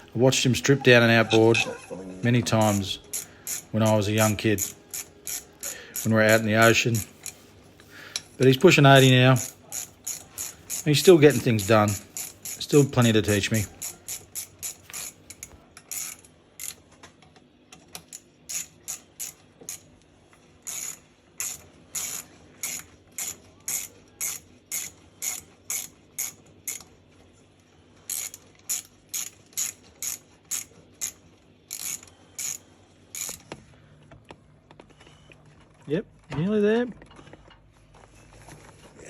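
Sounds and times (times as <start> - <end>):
ratchet wrench clicking: 2.6 - 7.4, 9.0 - 16.8, 18.0 - 19.9, 20.6 - 26.9, 28.1 - 33.4.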